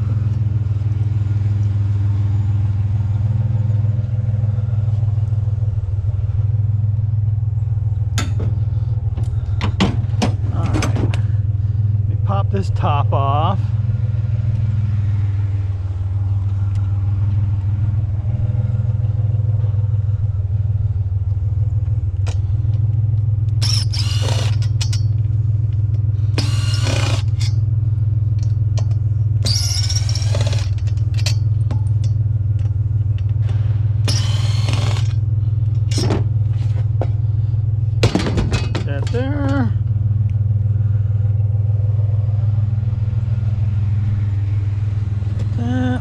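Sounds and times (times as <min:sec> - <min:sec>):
low engine-like hum: 0:00.0 - 0:46.0
high metal squealing: 0:23.6 - 0:25.2, 0:29.4 - 0:32.1, 0:33.8 - 0:35.2.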